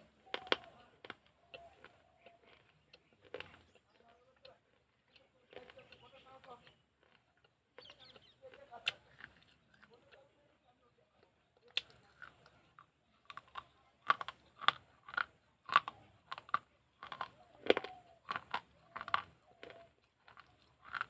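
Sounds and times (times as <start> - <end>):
teeth crunching clay: 0.0 - 10.3, 11.2 - 21.0
clay piece cracking: 13.3 - 21.0.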